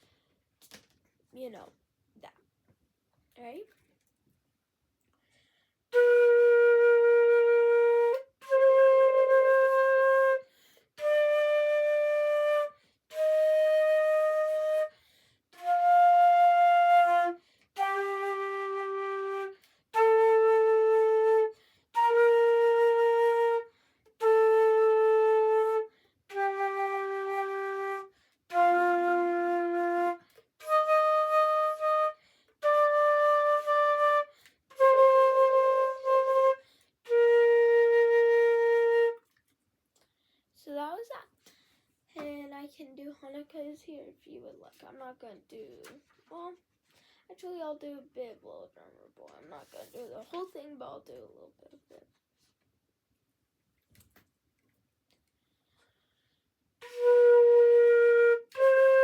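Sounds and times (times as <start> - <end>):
flute playing slow scale: 5.9 - 39.3, 56.8 - 59.0.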